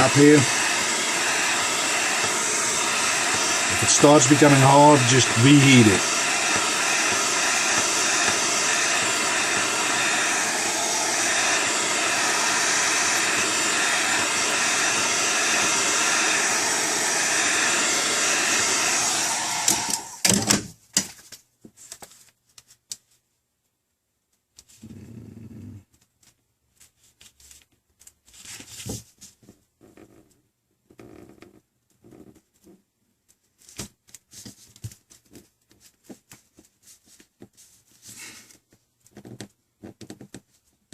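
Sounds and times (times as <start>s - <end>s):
hot-air blower running: 0.0s - 20.3s.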